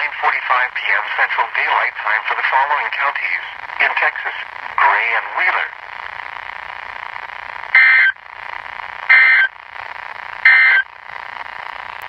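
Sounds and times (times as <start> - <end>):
radio hiss: 0.0 - 12.0
short buzzing data bursts: 7.7 - 8.2, 9.0 - 9.6, 10.4 - 10.9.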